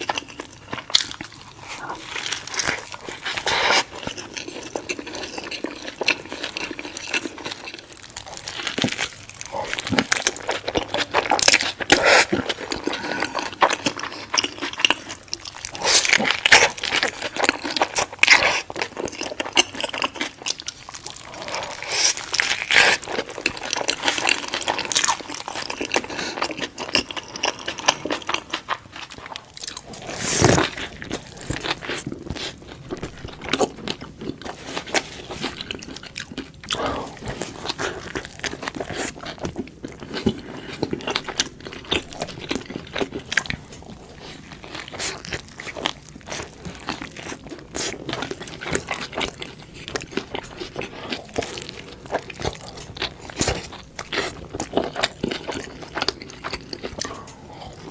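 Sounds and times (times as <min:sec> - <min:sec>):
crunchy eating and chewing: 0:00.0 - 0:57.9.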